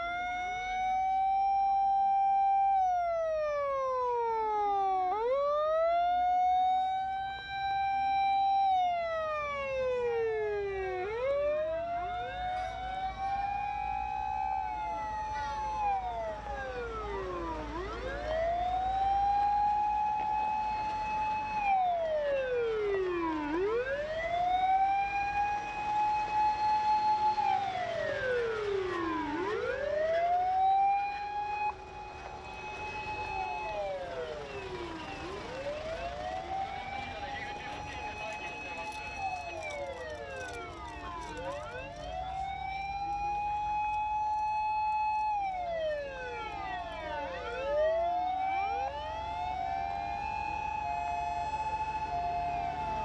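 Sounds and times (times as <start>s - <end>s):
fire engine sirens wailing: 0.0s - 53.0s
low engine rumble: 12.0s - 47.3s.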